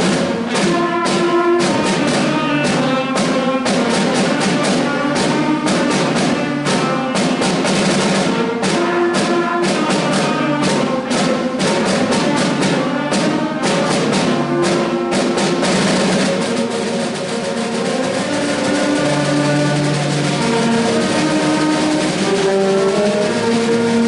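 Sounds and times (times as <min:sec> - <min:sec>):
drum strikes: 0:00.0 - 0:24.0
orchestral brass notes: 0:00.0 - 0:24.0.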